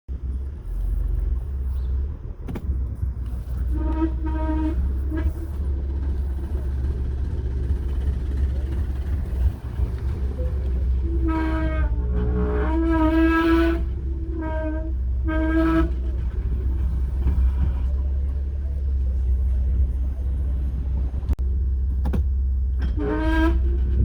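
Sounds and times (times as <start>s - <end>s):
car low rumble: 0.0s - 24.0s
pitched grinding groan: 3.3s - 17.9s.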